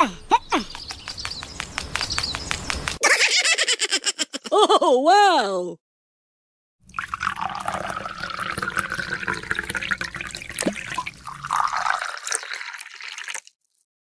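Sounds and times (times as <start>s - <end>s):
water pouring and trickling: 6.8s - 13.9s
water splashes and drips: 6.8s - 13.9s.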